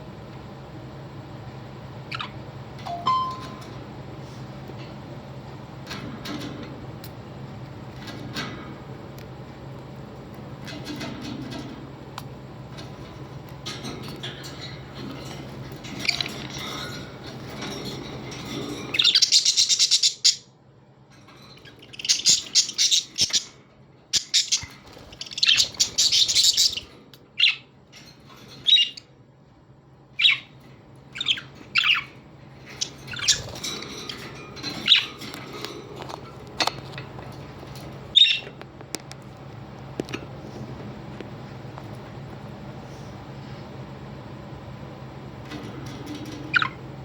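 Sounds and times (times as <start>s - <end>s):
parrots chirping: 2.0s - 3.4s, 18.5s - 20.6s, 21.6s - 27.7s, 28.6s - 29.1s, 30.2s - 35.6s, 38.1s - 38.6s, 46.4s - 46.8s.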